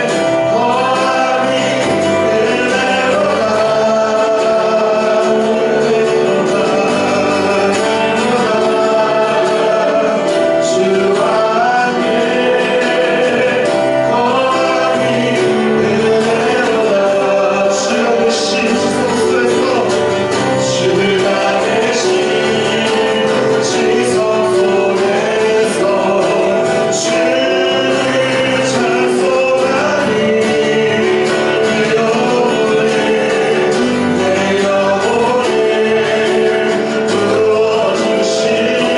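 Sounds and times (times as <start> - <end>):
band playing worship song: 0.0 - 38.9
voices singing: 0.0 - 38.9.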